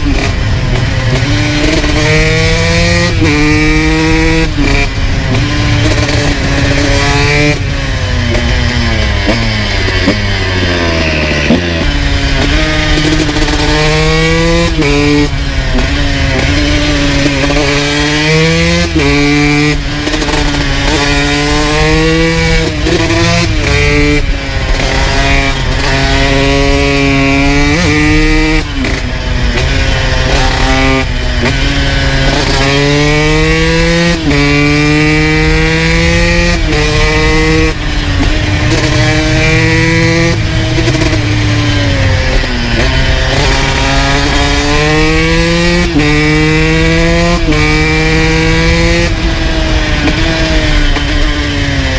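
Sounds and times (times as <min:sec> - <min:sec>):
two-stroke motorcycle engine revving: 0:00.0 - 0:51.9.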